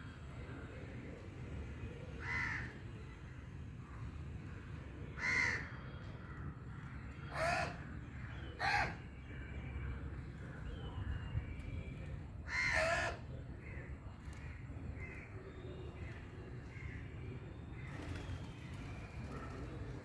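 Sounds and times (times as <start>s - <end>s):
crow cawing: 2.2s - 2.7s, 5.2s - 5.7s, 7.3s - 7.8s, 12.5s - 13.2s.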